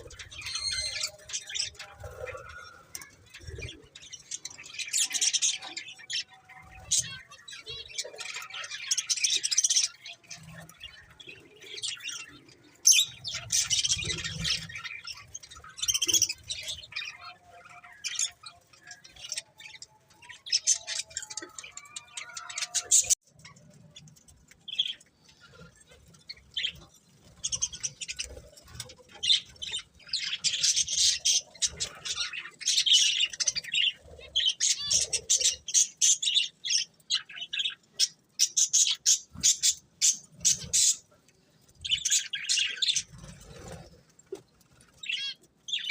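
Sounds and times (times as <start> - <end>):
budgerigars chirping: 0.0 - 2.2.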